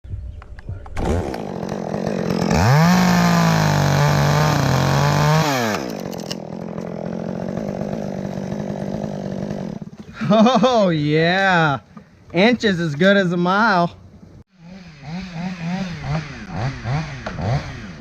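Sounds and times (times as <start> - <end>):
chainsaw revving and idling: 1.0 - 10.6, 14.5 - 18.0.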